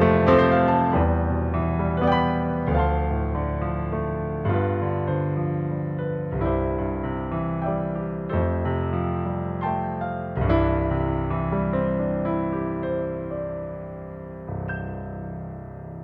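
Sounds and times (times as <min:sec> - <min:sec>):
slow piano chords: 0:00.0 - 0:16.0.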